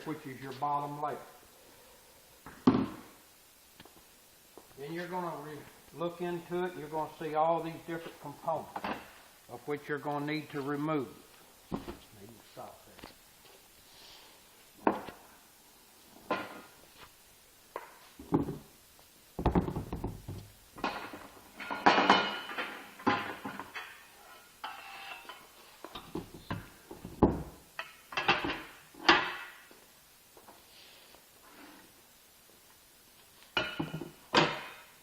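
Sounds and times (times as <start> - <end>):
knocks and clattering of parts: 19.4 - 29.7, 33.6 - 34.9.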